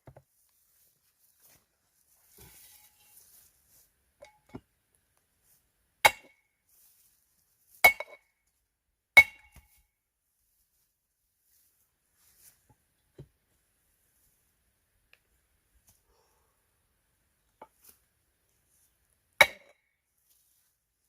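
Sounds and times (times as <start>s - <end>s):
tool strikes splitting firewood: 6.0s - 6.4s, 7.8s - 8.2s, 9.2s - 9.8s, 19.4s - 19.7s.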